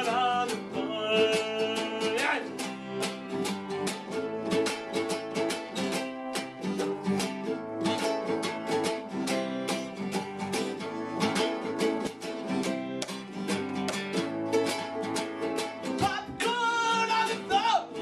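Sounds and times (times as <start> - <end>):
acoustic guitar strumming: 0.0 - 18.0.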